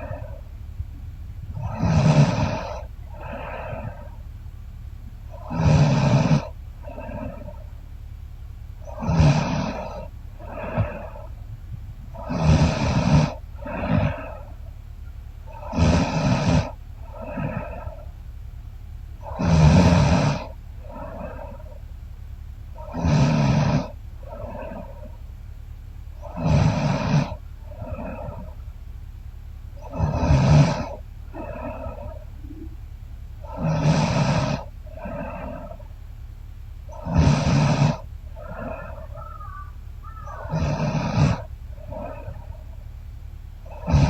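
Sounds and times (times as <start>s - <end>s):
soft breath: 0.0s - 7.9s, 8.7s - 25.4s, 26.0s - 29.0s, 29.6s - 44.0s
woman snoring loudly: 1.6s - 4.0s, 5.4s - 7.6s, 8.9s - 11.3s, 12.2s - 14.4s, 15.6s - 18.0s, 19.2s - 21.6s, 22.8s - 25.0s, 26.2s - 28.5s, 29.8s - 32.1s, 33.5s - 35.8s, 36.9s - 39.2s, 40.3s - 42.4s, 43.7s - 44.0s.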